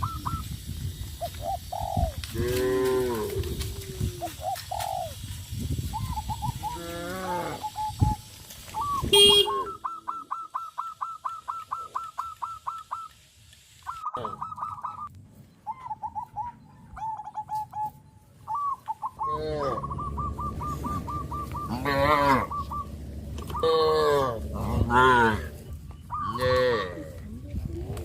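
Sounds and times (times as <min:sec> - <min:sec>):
birds chirping: 0:00.0 - 0:27.9
fuller bird call: 0:07.5 - 0:13.2, 0:13.8 - 0:25.0
low rumble: 0:19.4 - 0:26.0.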